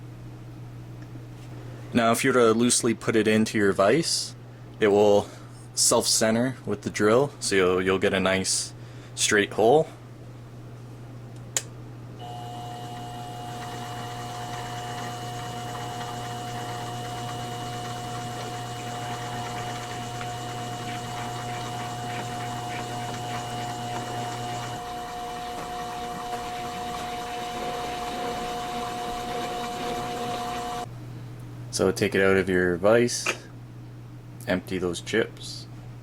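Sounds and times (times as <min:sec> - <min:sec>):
bit drilling into glass: 0:12.2 - 0:30.8
drill press motor whining: 0:12.2 - 0:30.9.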